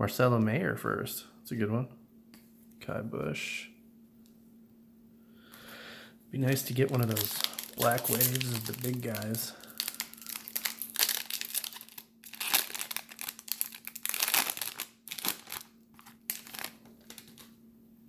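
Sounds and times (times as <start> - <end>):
plastic wrapper crinkling: 6.4 - 17.6.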